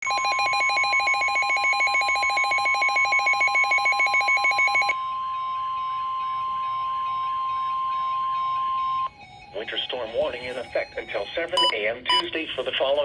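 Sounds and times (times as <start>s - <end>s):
steady warning alarm tone: 0.0s - 12.4s
rapid alert beeping: 10.8s - 12.3s.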